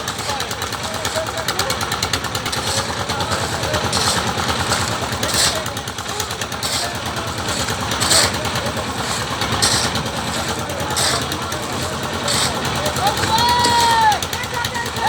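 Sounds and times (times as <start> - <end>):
concrete mixer engine running: 0.0 - 15.0
high hissing scraping bursts: 2.5 - 14.0.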